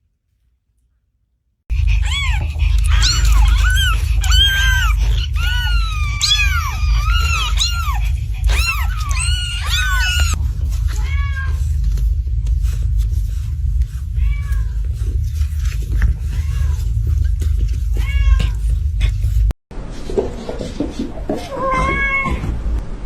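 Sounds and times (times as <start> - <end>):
cats meowing: 1.7 - 12.0, 13.9 - 19.4, 21.4 - 22.5
low hum: 1.7 - 21.4.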